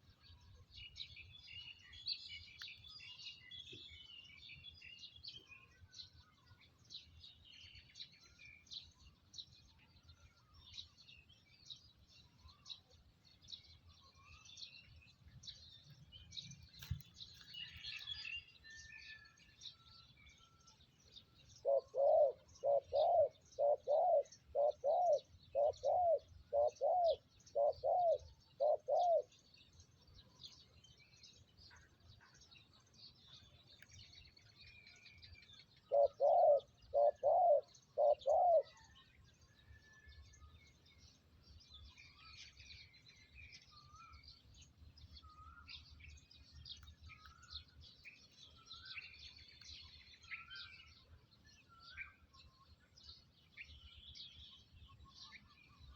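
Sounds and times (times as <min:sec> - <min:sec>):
small birds chirping faintly: 0:00.0 - 0:55.9
dove cooing: 0:21.6 - 0:29.3, 0:35.8 - 0:38.9.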